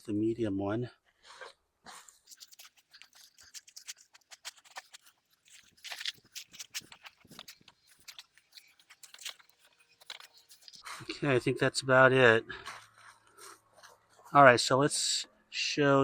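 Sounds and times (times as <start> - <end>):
hands digging through potting soil: 1.3 - 11.3.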